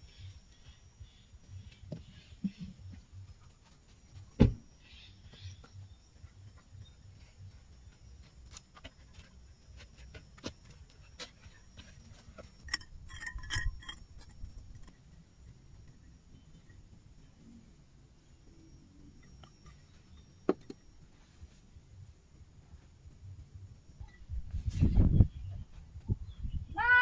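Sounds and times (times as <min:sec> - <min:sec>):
sharp thump: 0:04.4 - 0:04.6.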